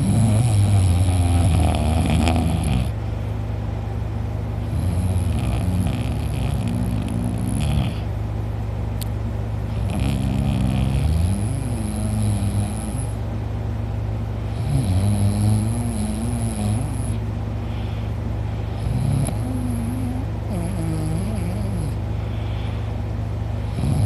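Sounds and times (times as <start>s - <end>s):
man snoring loudly: 0.0s - 3.0s, 4.6s - 8.1s, 9.8s - 13.2s, 14.5s - 17.2s, 18.8s - 22.0s, 23.7s - 24.0s.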